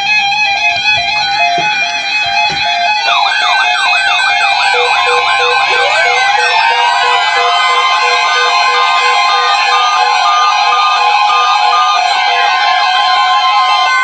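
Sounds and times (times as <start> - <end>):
falling whistle: 1.2 - 14.0
warbling siren-like sweep: 3.0 - 14.0
weather alert radio alarm tones: 3.0 - 14.0.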